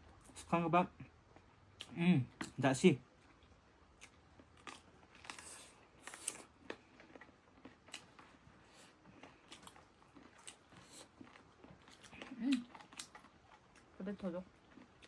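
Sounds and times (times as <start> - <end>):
chewing food crunches: 3.2 - 15.0.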